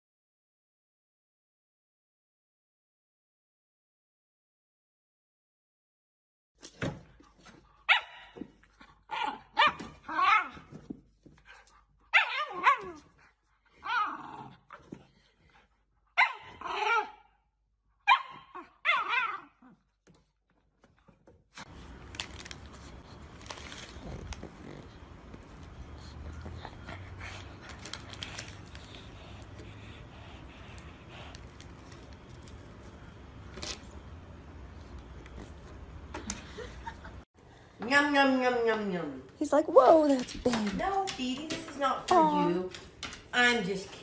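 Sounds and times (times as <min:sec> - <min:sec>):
dog barking and whining: 0:07.9 - 0:10.8, 0:12.1 - 0:14.8, 0:16.2 - 0:17.4, 0:18.0 - 0:19.8.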